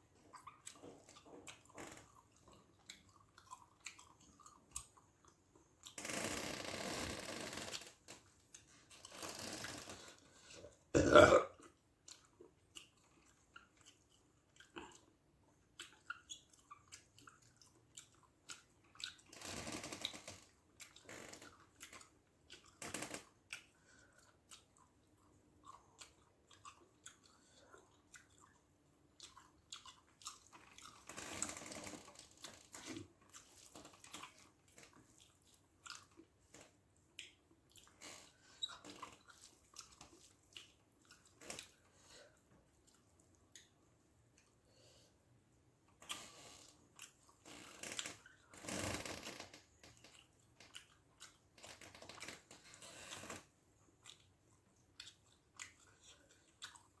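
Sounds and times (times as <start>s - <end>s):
faint chewing: 0.0s - 6.3s, 7.5s - 57.0s
wet mouth clicks and smacks: 15.8s - 19.3s, 32.8s - 38.0s, 38.6s - 41.9s, 55.0s - 57.0s.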